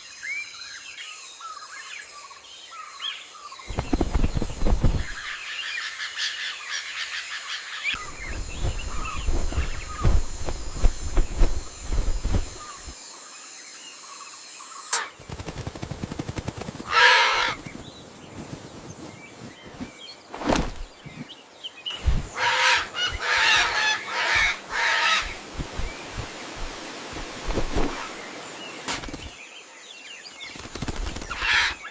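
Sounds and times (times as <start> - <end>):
bird calls: 2.9 - 13.0, 16.6 - 29.6, 30.2 - 31.9
quick fluttering patter: 3.7 - 5.4, 8.0 - 13.0, 15.0 - 21.3, 22.0 - 29.4, 30.4 - 31.9.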